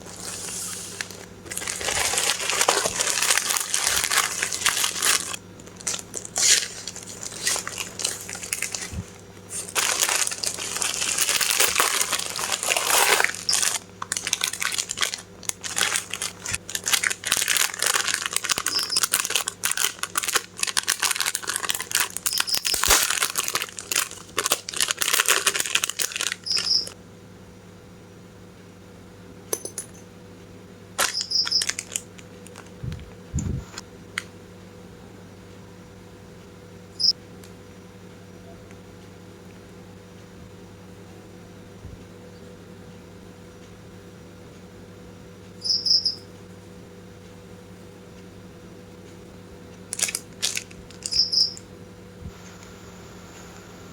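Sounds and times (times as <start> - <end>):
packaging crinkling: 0.0 - 27.0, 31.0 - 33.2, 49.9 - 51.2.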